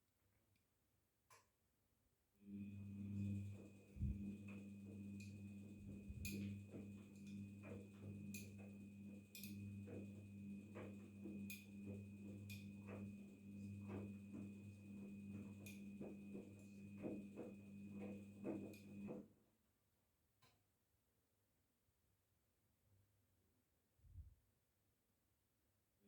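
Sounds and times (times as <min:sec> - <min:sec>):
washing machine humming: 0:02.5 - 0:19.2.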